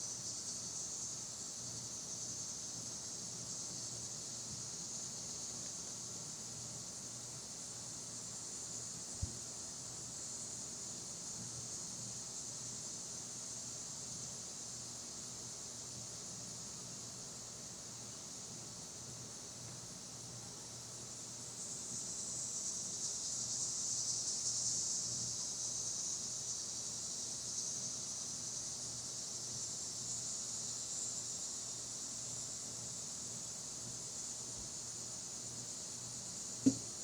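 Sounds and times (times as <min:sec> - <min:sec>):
insects buzzing: 0:21.5 - 0:37.0.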